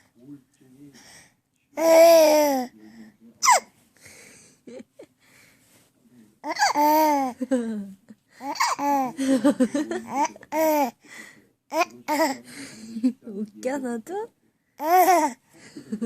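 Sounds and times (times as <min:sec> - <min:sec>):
person laughing: 0:09.2 - 0:10.3.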